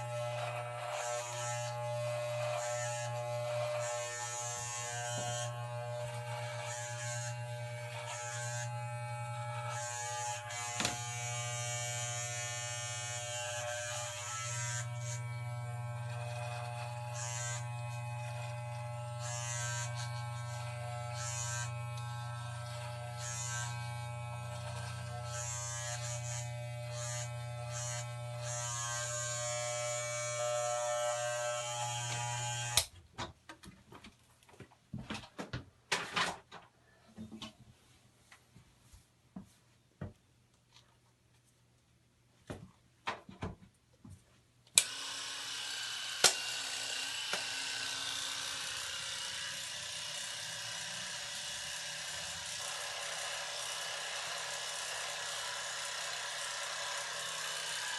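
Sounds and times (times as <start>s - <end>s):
electric hair clippers buzzing: 0.0s - 32.9s, 44.8s - 57.9s.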